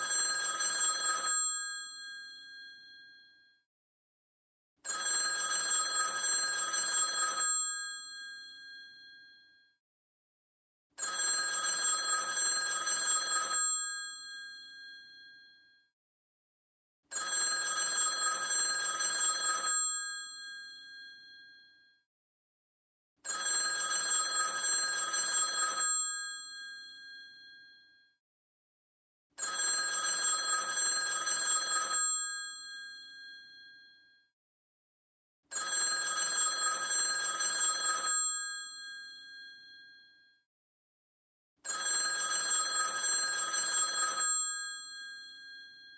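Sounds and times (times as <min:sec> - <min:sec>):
telephone bell ringing: 0:00.0 - 0:03.4, 0:04.8 - 0:09.6, 0:11.0 - 0:15.8, 0:17.1 - 0:21.8, 0:23.2 - 0:28.0, 0:29.4 - 0:34.2, 0:35.5 - 0:40.2, 0:41.6 - 0:45.9.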